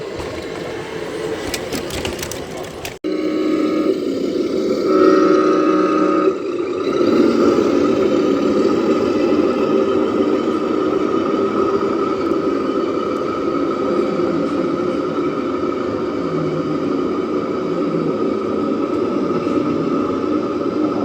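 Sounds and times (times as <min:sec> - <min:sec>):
toy truck engine running: 0:00.0 - 0:21.0.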